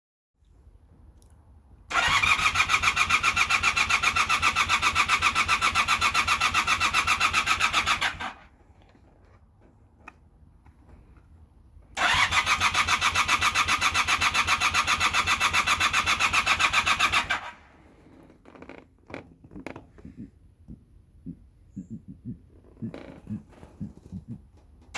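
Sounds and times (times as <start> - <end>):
motorcycle starter cranking: 1.9 - 8.5, 12.0 - 19.2.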